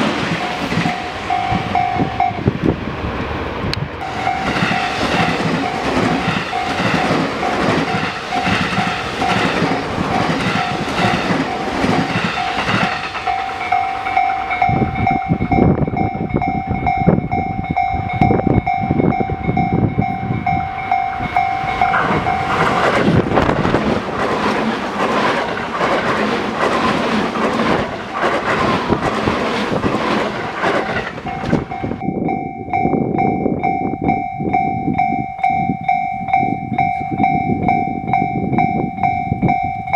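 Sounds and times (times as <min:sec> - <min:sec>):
train wheels clicking on rail joints: 0:00.0 - 0:39.9
level crossing bell ringing: 0:00.4 - 0:02.5, 0:04.0 - 0:23.5, 0:31.2 - 0:39.9.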